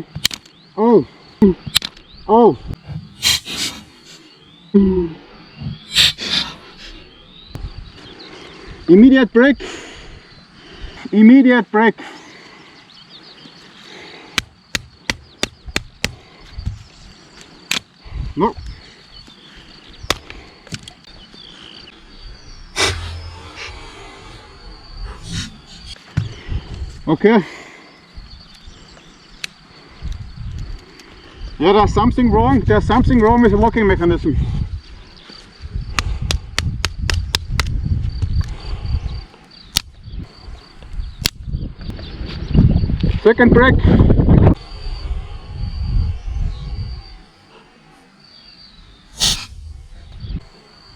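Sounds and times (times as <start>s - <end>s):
low rumbling handling noise: 21.0s - 26.0s.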